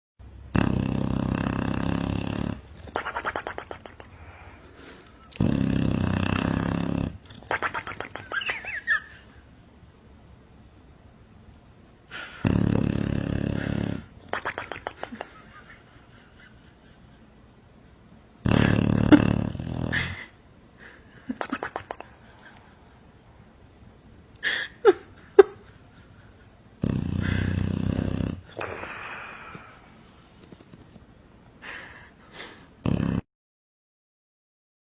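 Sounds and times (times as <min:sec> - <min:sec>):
loud buzzing snore: 0:00.5 - 0:02.7, 0:05.3 - 0:07.2, 0:12.1 - 0:14.1, 0:18.4 - 0:20.2, 0:26.8 - 0:29.7, 0:32.8 - 0:33.2.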